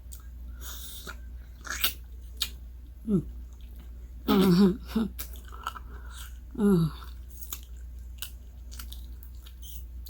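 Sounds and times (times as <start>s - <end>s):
low steady hum: 0.0s - 10.0s
chewing with wet mouth clicks: 1.0s - 2.6s, 7.0s - 10.0s.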